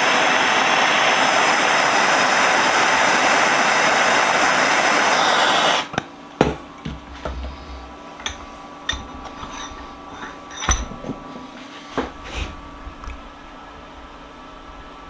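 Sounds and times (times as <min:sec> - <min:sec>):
metal tools clinking and knocking: 0:06.8 - 0:11.6.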